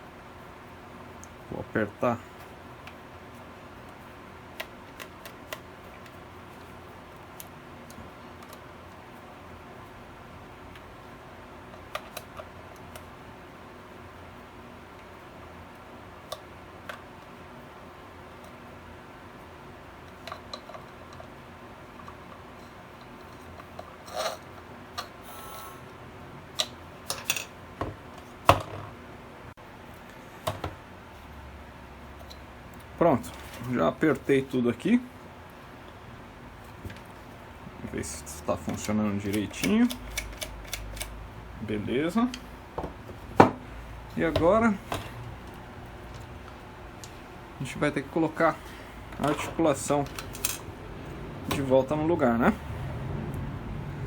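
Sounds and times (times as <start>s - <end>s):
faint hum: 28.1s - 54.0s
screwdriver and plastic clicks: 38.7s - 41.2s.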